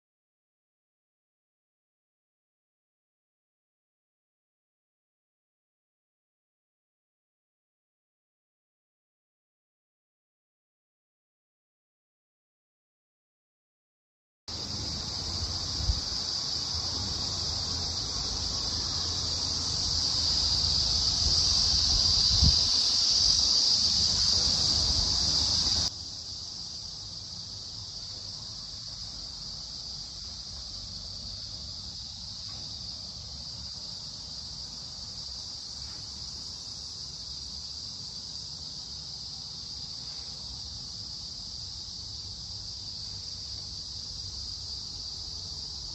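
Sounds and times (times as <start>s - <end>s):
crickets trilling: 14.5s - 45.9s.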